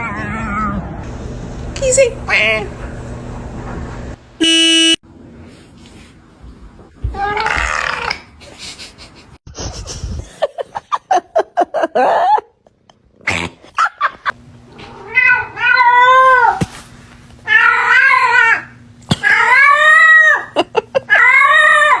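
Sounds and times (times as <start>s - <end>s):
cat crying and yowling: 0.0s - 1.0s, 7.2s - 8.2s, 14.8s - 16.6s, 17.4s - 22.0s.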